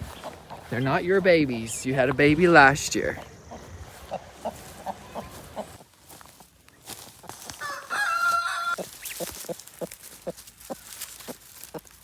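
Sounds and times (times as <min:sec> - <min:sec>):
chicken clucking: 0:00.0 - 0:01.7, 0:02.3 - 0:06.5, 0:07.2 - 0:12.0
chicken drawn-out call: 0:07.2 - 0:11.9.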